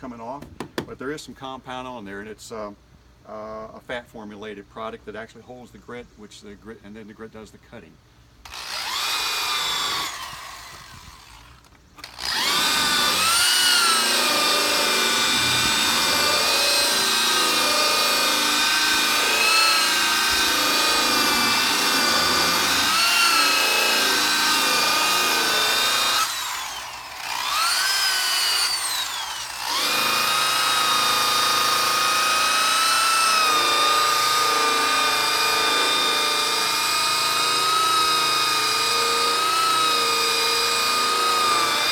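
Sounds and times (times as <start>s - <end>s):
power buffer whining: 8.5s - 41.9s.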